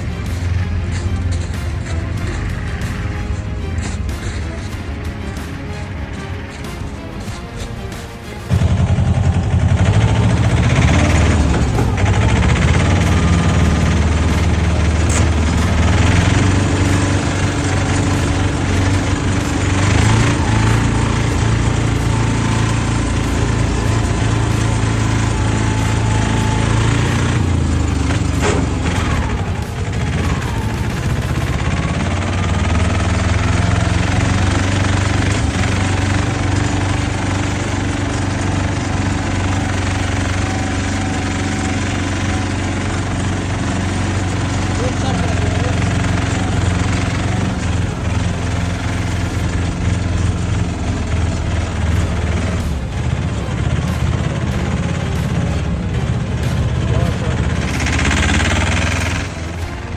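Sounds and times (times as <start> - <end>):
utility vehicle engine running: 0.0 - 59.9.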